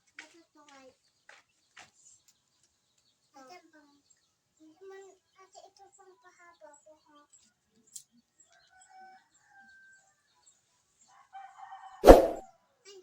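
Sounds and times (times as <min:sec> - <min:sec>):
rooster crowing: 0:11.3 - 0:12.0
loud sharp bang: 0:12.0 - 0:12.4.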